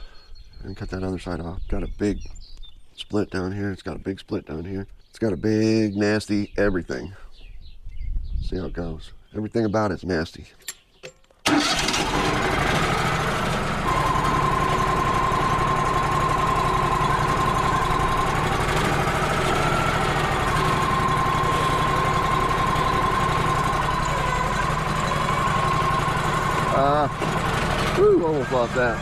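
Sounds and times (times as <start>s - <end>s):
portable sawmill running: 11.5s - 29.0s
machine whine: 12.3s - 29.0s.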